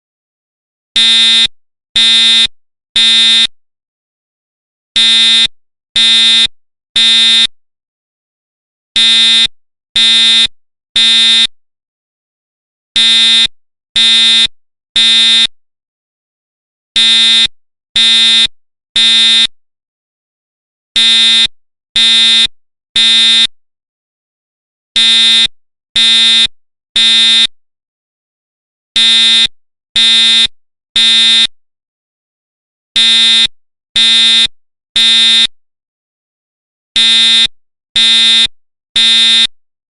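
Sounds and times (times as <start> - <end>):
fire alarm horn blasts: 1.0 - 3.5, 5.0 - 7.5, 9.0 - 10.4, 13.0 - 14.4, 17.0 - 19.5, 21.0 - 23.5, 25.0 - 27.5, 29.0 - 31.5, 33.0 - 35.5, 37.0 - 39.5.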